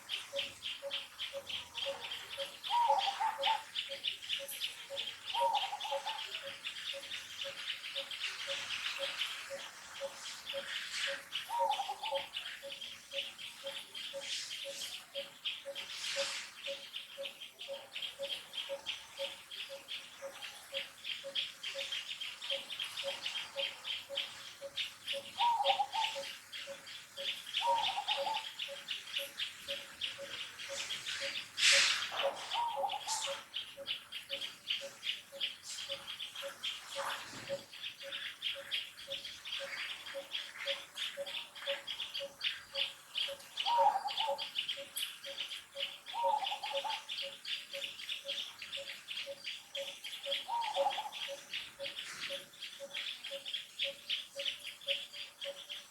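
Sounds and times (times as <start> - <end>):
short bird calls: 30.3 - 33.5.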